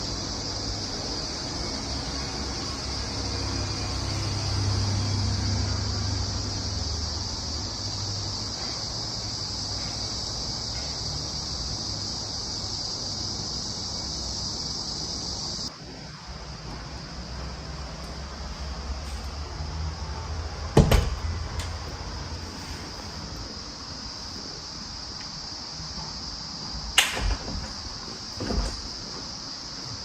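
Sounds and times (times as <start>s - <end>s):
high even hiss: 6.1s - 18.0s.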